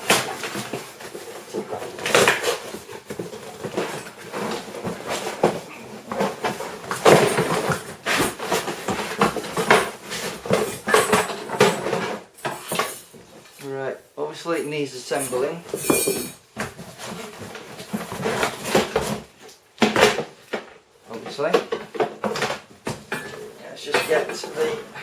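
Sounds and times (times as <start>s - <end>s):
cardboard box scraping and rustling: 16.7s - 19.4s.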